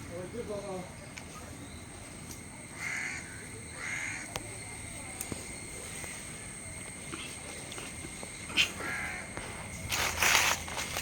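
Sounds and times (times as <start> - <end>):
crow cawing: 2.8 - 4.3, 8.8 - 9.4.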